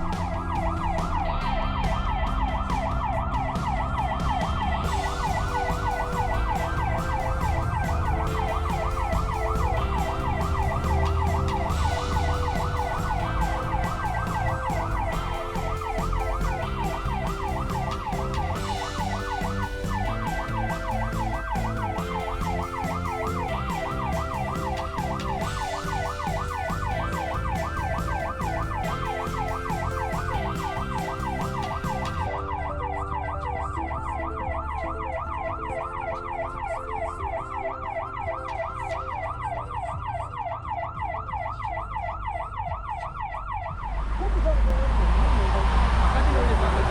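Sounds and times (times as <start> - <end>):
electronic siren yelping: 0.0 - 46.9
low engine rumble: 41.9 - 46.9.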